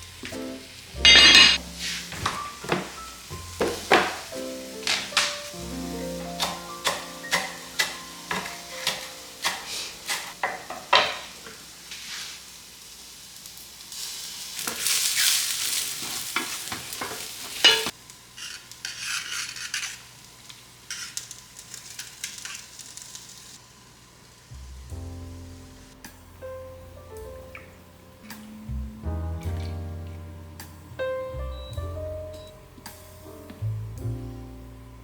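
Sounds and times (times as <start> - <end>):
hissing and stirring: 0.0 - 24.9
utensil tapping: 6.3 - 11.1
utensil scraping: 17.6 - 20.2.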